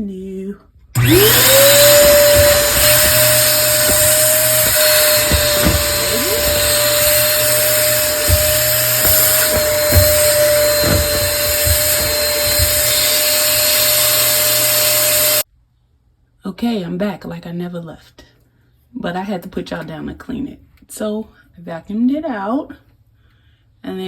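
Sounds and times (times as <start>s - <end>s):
nozzle knocking against housing: 1.0s - 15.4s
vacuum cleaner running: 1.0s - 15.4s.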